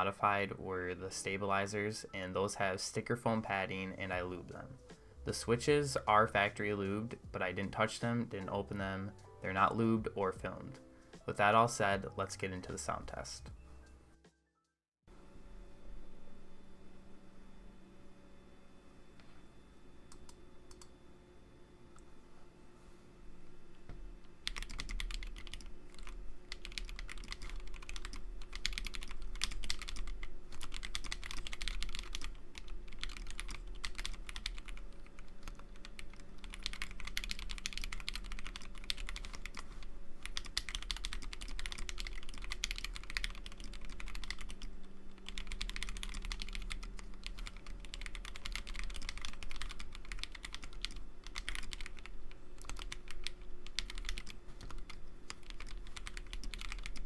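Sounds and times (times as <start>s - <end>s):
mechanical keyboard typing: 24.4s - 39.6s, 40.2s - 57.0s.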